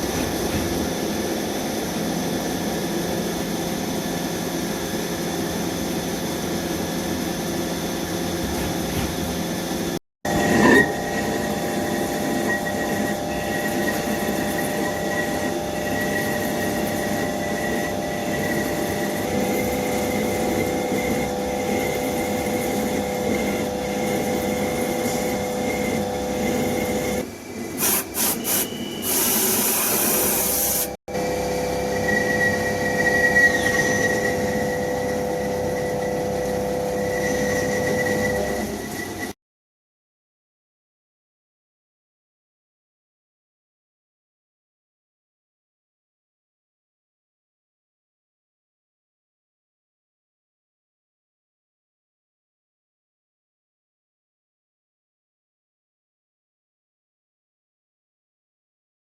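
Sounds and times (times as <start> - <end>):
cnc machine cutting with whine: 0.0 - 27.8, 28.4 - 39.3.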